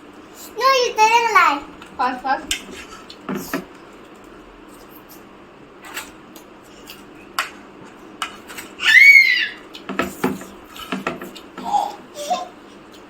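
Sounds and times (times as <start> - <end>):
cutlery and dishes clinking: 5.8 - 6.2
child squealing: 8.8 - 9.7.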